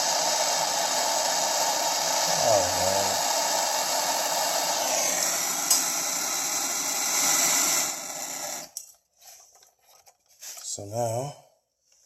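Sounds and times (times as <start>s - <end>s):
torch flame hissing: 0.0s - 7.1s.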